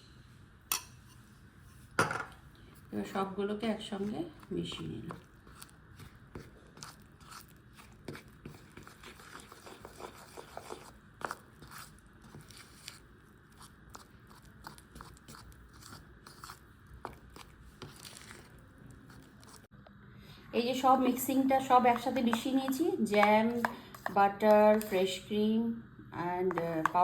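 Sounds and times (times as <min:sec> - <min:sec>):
spoon stirring in bowl: 0:03.8 - 0:19.7, 0:20.8 - 0:25.3, 0:26.4 - 0:27.0.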